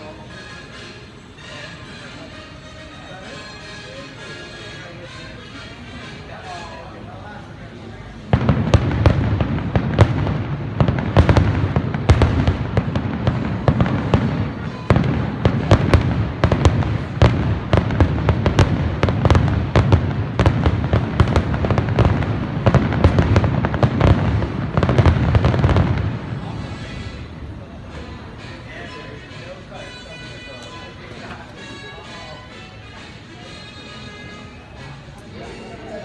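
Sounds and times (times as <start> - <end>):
fireworks cracking and popping: 8.4 - 26.2.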